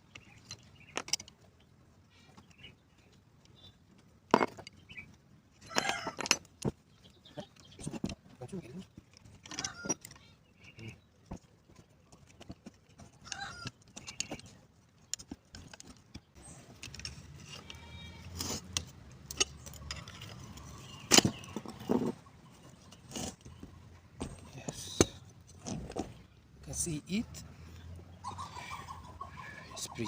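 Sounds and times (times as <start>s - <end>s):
metal parts clicking and clinking: 5.5s - 6.7s, 9.0s - 10.8s, 15.1s - 21.7s.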